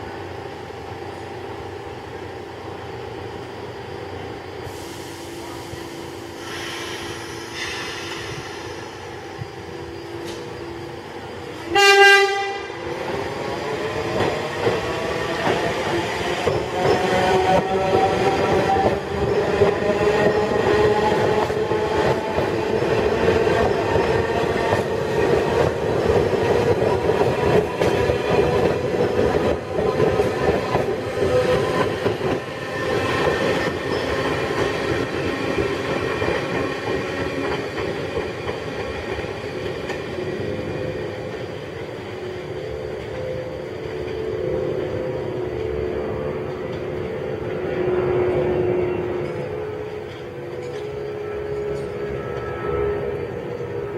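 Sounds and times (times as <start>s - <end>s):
subway train horn blast: 11.6s - 13.0s, 47.5s - 53.9s.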